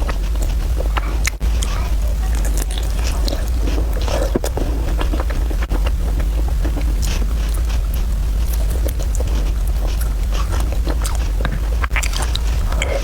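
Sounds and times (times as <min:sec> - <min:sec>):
low hum: 0:00.0 - 0:13.0
wet chewing and smacking: 0:00.0 - 0:13.0.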